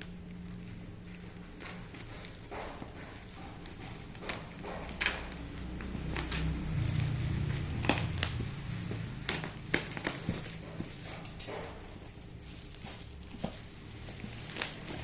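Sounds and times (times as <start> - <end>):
packaging clicks and taps: 0.0 - 15.0
low handling rumble: 5.4 - 11.0.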